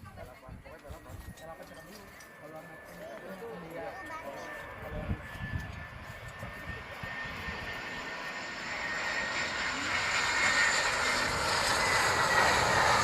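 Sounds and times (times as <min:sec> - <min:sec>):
jet airliner landing: 0:01.2 - 0:13.0.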